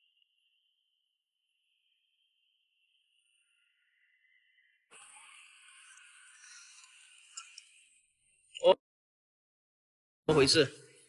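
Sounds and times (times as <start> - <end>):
lower insect trill: 0.0 - 8.0
faint insect trill: 0.0 - 8.4.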